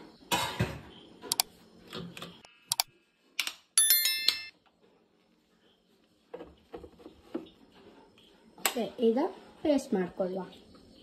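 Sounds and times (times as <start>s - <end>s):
electronic chime: 3.8s - 4.5s.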